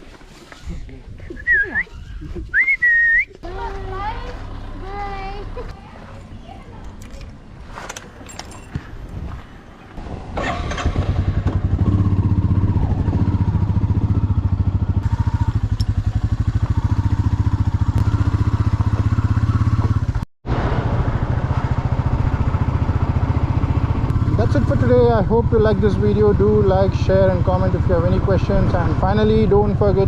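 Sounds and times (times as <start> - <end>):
motorcycle engine running: 3.4 - 7.3, 10.0 - 30.0.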